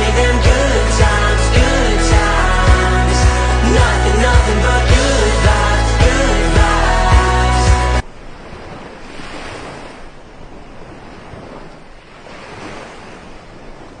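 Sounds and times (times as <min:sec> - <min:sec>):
background music: 0:00.0 - 0:08.0
ocean waves breaking: 0:07.0 - 0:14.0.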